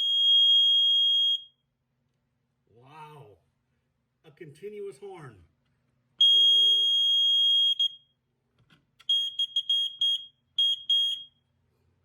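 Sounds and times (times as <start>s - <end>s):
smoke alarm horn: 6.2s - 8.0s, 9.1s - 11.4s.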